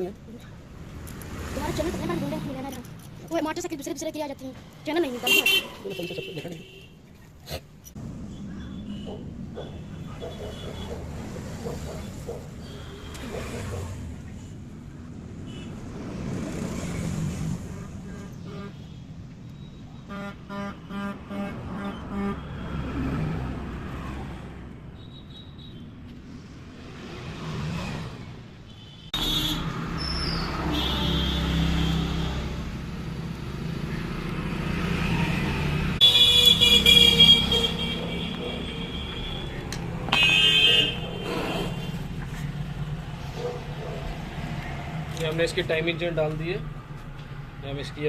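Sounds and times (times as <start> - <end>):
loud horn blast: 20.1 - 22.5
car horns beeping: 28.7 - 29.7, 36.0 - 42.0.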